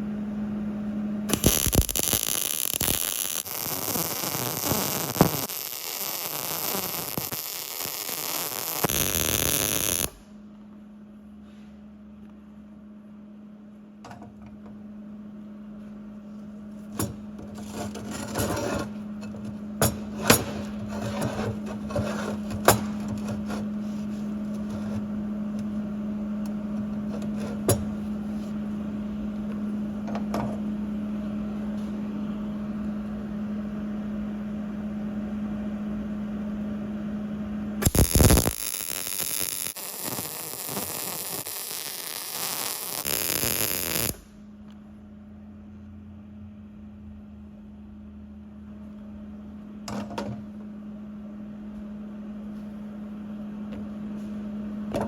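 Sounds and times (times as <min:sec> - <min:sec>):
electrical hum: 0:00.0 - 0:55.0
arc welding crackle: 0:01.3 - 0:10.3, 0:37.8 - 0:44.4.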